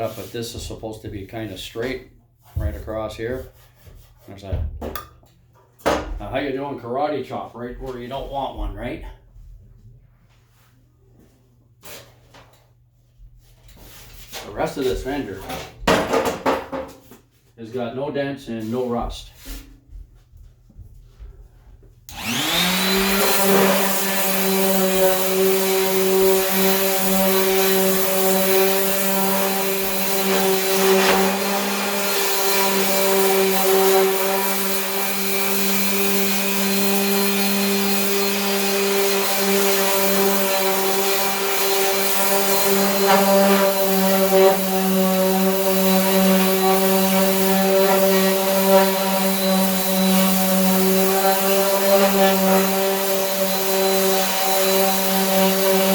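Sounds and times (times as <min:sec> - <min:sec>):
power sander running: 0:22.1 - 0:55.9.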